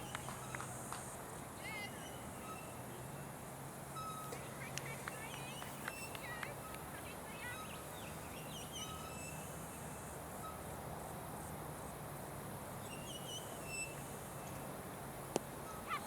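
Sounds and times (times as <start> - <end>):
outdoor background hiss: 0.0 - 16.0
birds chirping: 1.6 - 10.6, 12.8 - 14.7.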